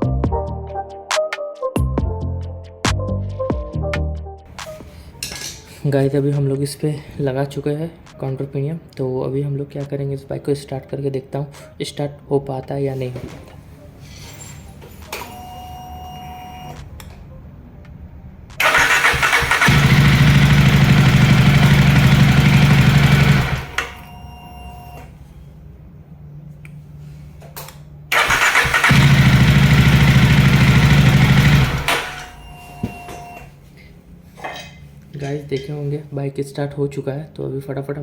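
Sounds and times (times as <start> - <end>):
motorcycle engine running: 18.6 - 24.0, 28.1 - 32.4
electric starter cranking: 18.6 - 24.1, 28.1 - 32.4.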